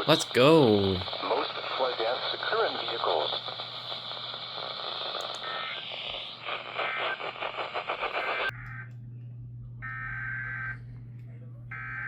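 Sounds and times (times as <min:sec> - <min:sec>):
radio static crackling: 0:00.0 - 0:08.5
steady low hum: 0:00.0 - 0:12.0.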